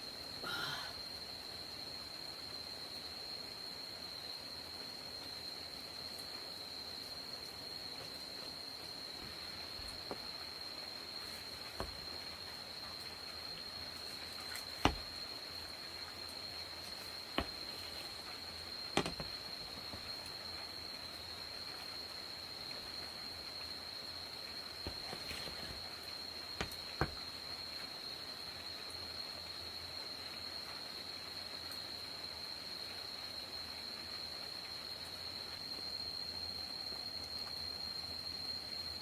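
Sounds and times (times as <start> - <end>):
crickets calling: 5.0 - 30.5
sharp knocks: 19.0 - 19.3.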